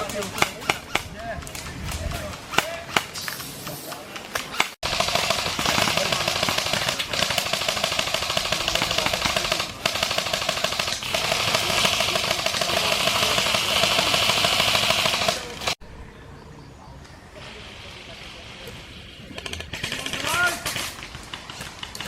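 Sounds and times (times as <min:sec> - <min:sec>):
airsoft gun firing full-auto: 0:04.8 - 0:15.8.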